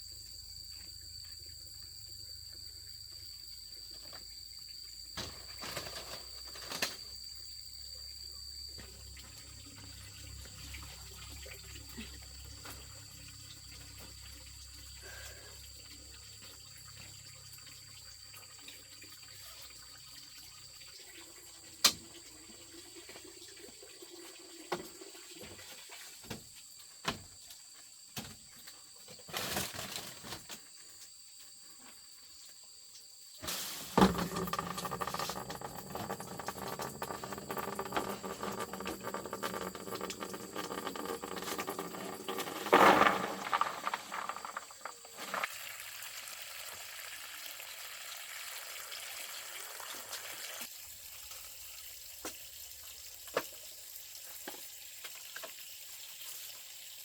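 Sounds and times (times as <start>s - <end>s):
water running and splashing: 33.4s - 57.0s.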